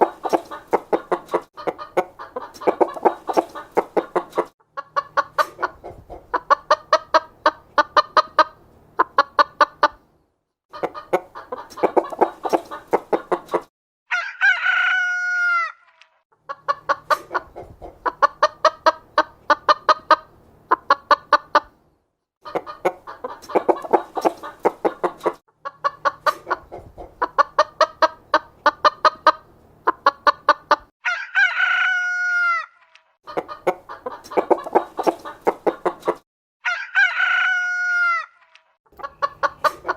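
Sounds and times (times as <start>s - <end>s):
chickens clucking: 0.0s - 10.1s, 10.7s - 13.7s, 16.4s - 21.8s, 22.4s - 30.9s, 33.3s - 36.2s, 38.9s - 39.9s
rooster crowing: 14.1s - 15.8s, 31.0s - 32.7s, 36.6s - 38.4s.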